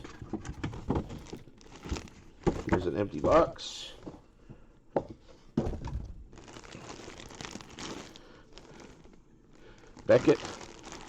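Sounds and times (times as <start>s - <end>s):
box knocking and thumping: 0.0s - 4.2s, 5.0s - 6.3s
packaging crinkling and rustling: 0.0s - 4.2s, 5.6s - 11.0s.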